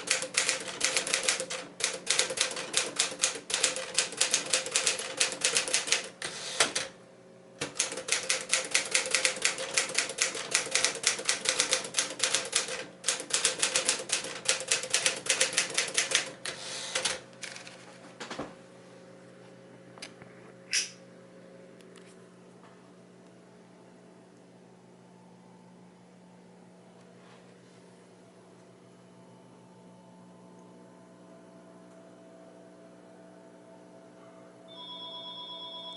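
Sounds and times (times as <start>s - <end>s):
typewriter keystroke clacks: 0.0s - 6.9s, 7.6s - 17.7s
faint steady hum: 16.6s - 35.9s.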